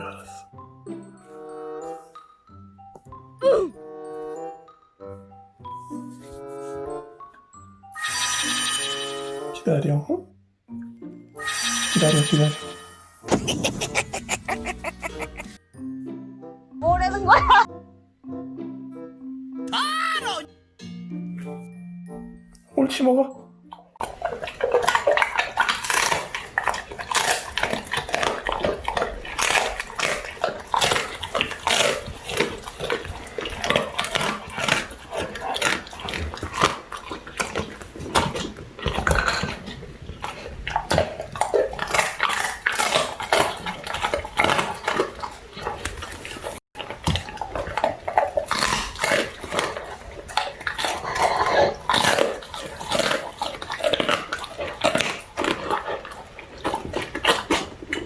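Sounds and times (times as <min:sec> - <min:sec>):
dog crunching and chewing bones: 0:11.5 - 0:15.6, 0:23.7 - 0:58.0.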